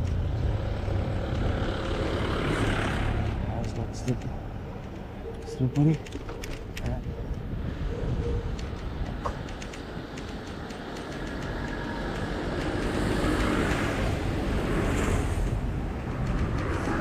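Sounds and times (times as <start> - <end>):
motor vehicle passing: 0.0 - 6.7, 7.5 - 17.0
wind rumble on microphone: 6.2 - 17.0.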